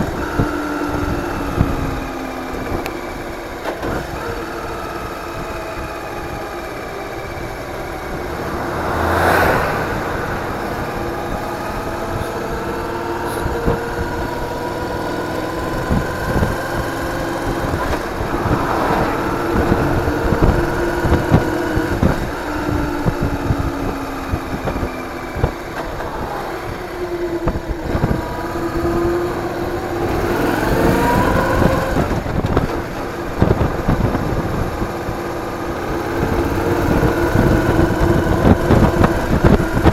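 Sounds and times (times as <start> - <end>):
road rumble: 0.0 - 39.9
vehicle engine revving: 0.0 - 39.9
loud whooshes: 7.8 - 13.5, 17.3 - 22.3.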